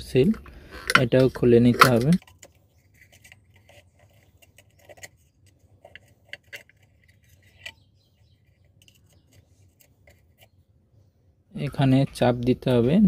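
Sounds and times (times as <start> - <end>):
hand tools clicking on metal: 0.3 - 2.5.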